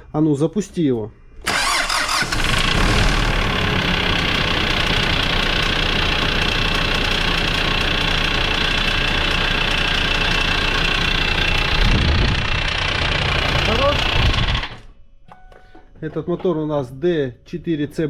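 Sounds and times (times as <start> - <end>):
diesel engine idling: 1.4 - 14.8.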